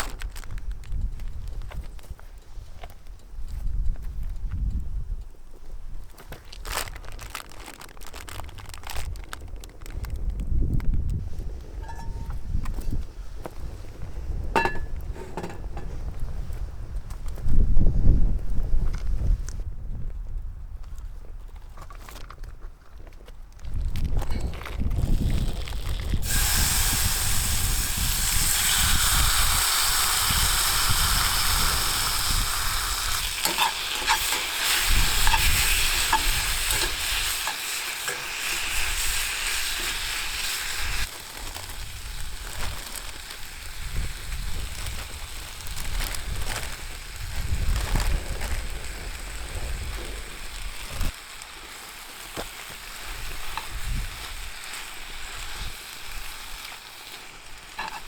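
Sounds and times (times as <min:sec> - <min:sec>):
food sizzling in a skillet: 0:26.2 - 0:45.9, 0:48.6 - 0:58.0.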